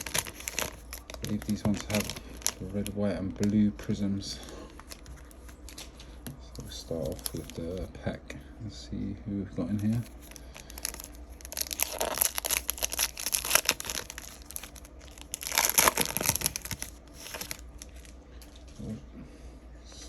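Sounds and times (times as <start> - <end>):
wrapper tearing and crinkling: 0.0 - 3.7, 4.7 - 6.0, 6.7 - 7.9, 9.8 - 18.6.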